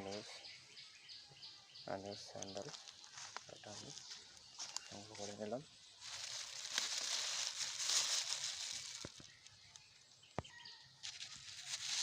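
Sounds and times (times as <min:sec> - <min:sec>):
litter rustling and crinkling: 0:06.0 - 0:09.6, 0:11.0 - 0:12.0.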